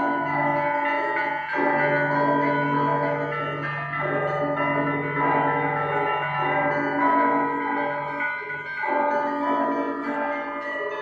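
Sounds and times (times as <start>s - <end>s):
church bells ringing: 0.0s - 11.0s.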